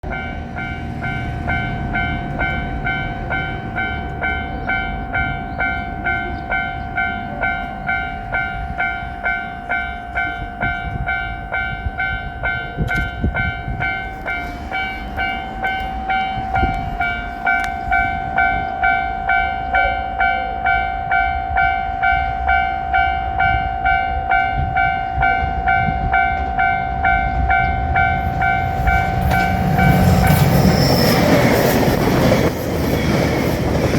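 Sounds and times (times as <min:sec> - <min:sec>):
approaching diesel train: 0:00.0 - 0:33.9
railroad crossing alarm ringing: 0:00.0 - 0:33.9.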